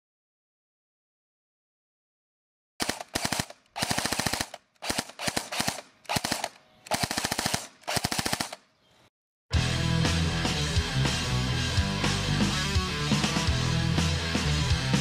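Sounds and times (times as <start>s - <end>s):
automatic gunfire bursts: 2.8s - 8.7s.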